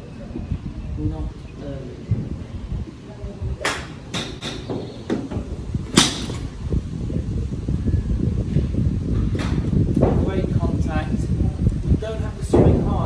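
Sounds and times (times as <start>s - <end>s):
golf club striking ball: 3.6s - 4.8s, 5.9s - 6.5s
steady low rumble: 4.9s - 13.0s.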